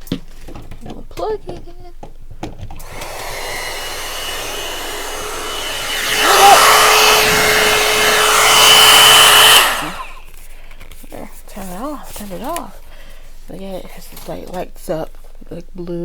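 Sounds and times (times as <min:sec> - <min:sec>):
hot air brush blowing: 0:02.8 - 0:10.4.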